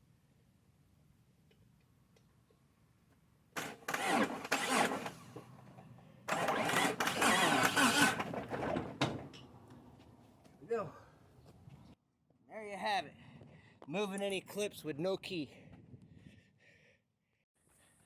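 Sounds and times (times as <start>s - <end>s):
car starter motor cranking: 3.6s - 5.6s, 6.3s - 8.6s.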